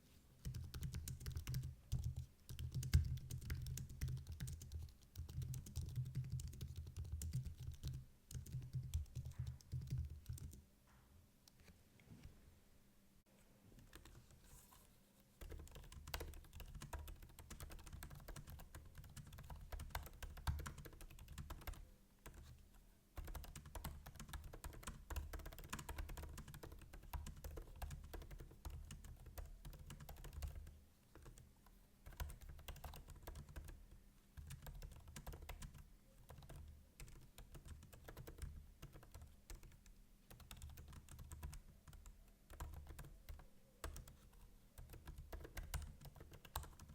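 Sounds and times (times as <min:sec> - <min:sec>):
fast typing on laptop keyboard: 0:00.4 - 0:10.6, 0:15.4 - 0:22.5, 0:23.2 - 0:31.4, 0:32.0 - 0:33.8, 0:34.4 - 0:46.9.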